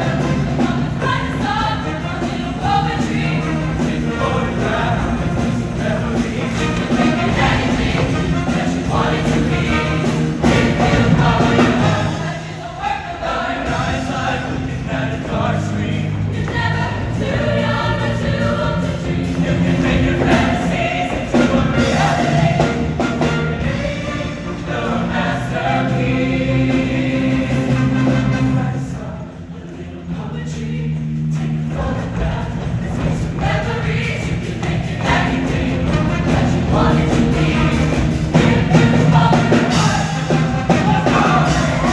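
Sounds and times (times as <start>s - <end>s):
instrumental backing music: 0.0s - 12.6s
show choir singing in parts: 0.0s - 41.9s.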